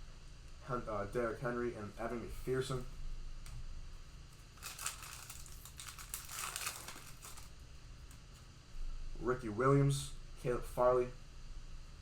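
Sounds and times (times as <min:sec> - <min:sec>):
plastic wrapper crinkling: 0:04.3 - 0:07.7.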